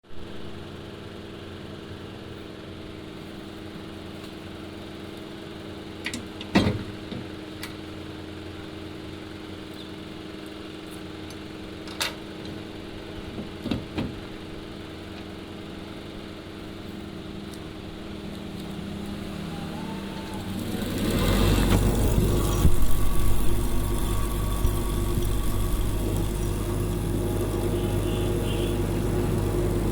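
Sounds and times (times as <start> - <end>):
small electric motor humming: 17.8 - 29.9
rough noise: 18.9 - 29.9.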